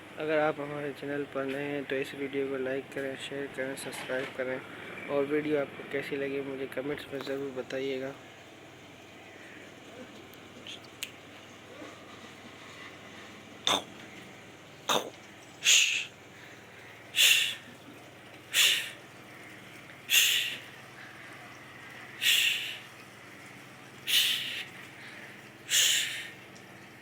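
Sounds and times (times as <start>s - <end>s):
cat giving breathy bursts: 14.9s - 16.2s, 17.1s - 17.7s, 18.5s - 19.0s, 20.1s - 20.8s, 22.2s - 22.9s, 24.1s - 24.9s, 25.7s - 26.4s.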